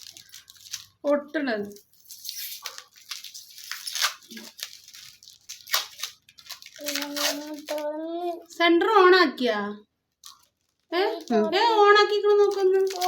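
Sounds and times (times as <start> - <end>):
packing tape ripping: 2.0 - 7.9, 12.4 - 13.0.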